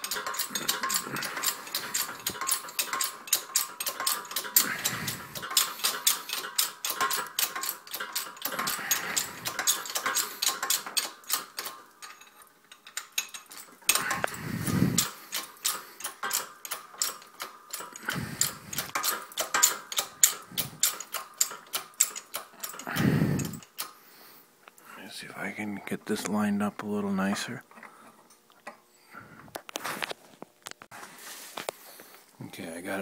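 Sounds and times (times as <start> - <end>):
hydraulic press clicking: 0.0 - 12.2, 12.8 - 24.0.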